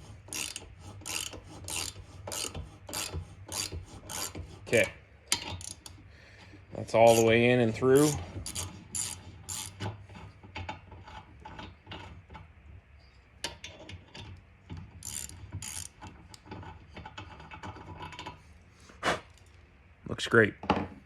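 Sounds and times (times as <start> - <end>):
tap handle ratcheting clicks: 0.2 - 4.4, 8.0 - 10.0, 14.7 - 17.3.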